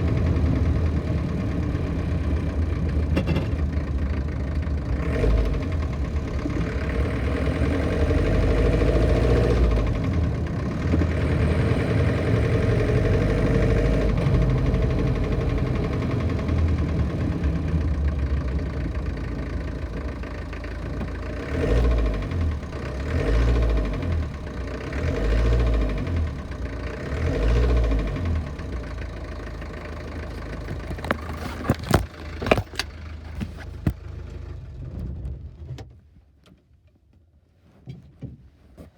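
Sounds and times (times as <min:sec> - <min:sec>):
engine running with metallic knock: 0:00.1 - 0:11.7, 0:27.9 - 0:36.0.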